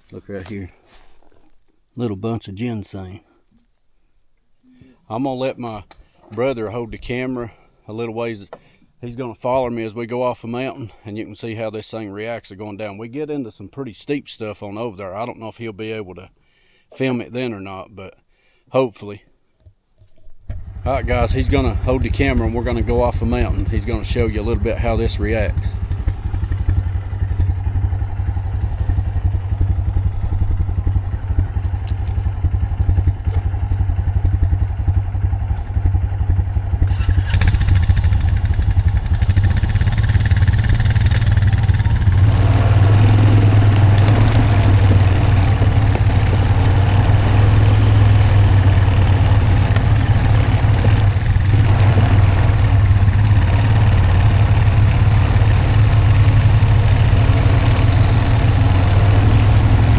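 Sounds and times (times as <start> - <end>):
atv engine running: 20.5 - 59.9.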